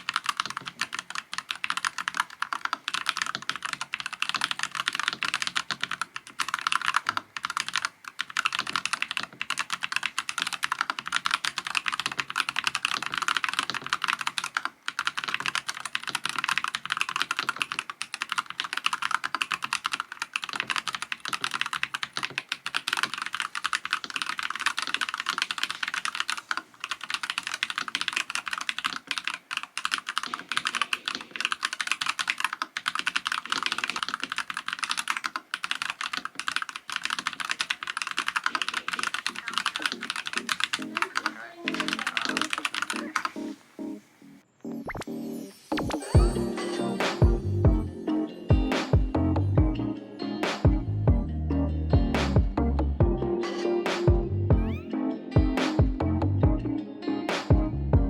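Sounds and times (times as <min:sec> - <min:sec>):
mechanical keyboard typing: 0:00.0 - 0:43.4.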